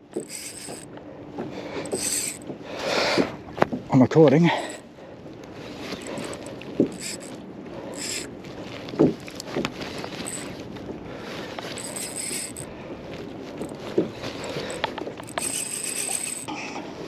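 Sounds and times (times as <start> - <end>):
wind: 0.0 - 17.0
fishing reel winding: 0.1 - 0.9, 1.8 - 2.4, 4.5 - 4.8, 5.9 - 8.3, 10.2 - 10.5, 11.7 - 12.7, 13.6 - 13.8, 14.4 - 16.5.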